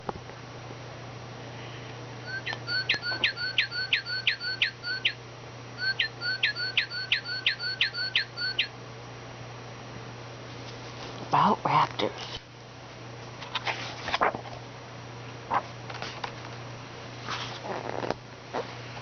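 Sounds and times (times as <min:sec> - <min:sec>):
bird whistling downward notes: 0:02.3 - 0:05.2, 0:05.8 - 0:08.7.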